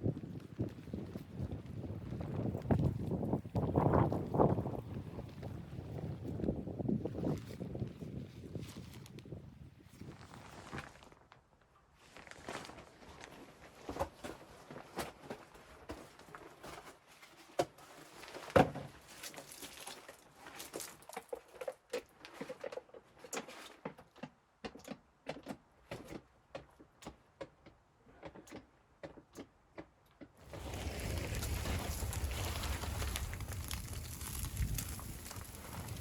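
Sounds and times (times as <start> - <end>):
wind on microphone: 0.0 - 10.3, 30.5 - 36.0.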